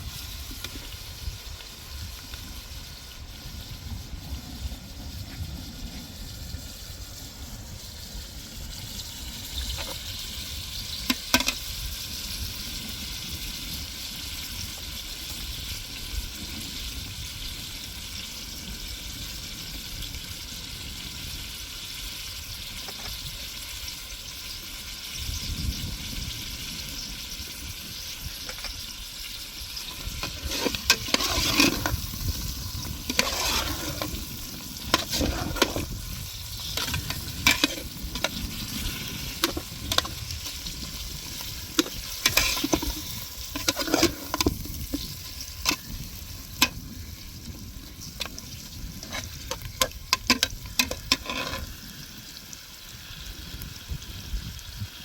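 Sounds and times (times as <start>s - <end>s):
food sizzling in a pan: 0.0s - 55.0s
utensil scraping and knocking pan: 29.9s - 40.6s, 41.3s - 45.9s, 49.0s - 51.7s.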